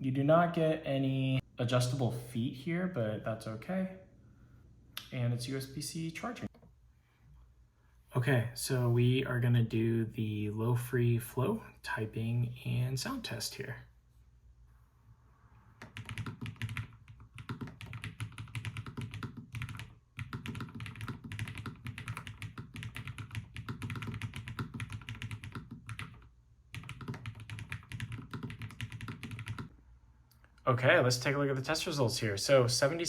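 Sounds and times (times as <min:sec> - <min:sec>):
fast typing on mechanical keyboard: 0:15.8 - 0:29.7.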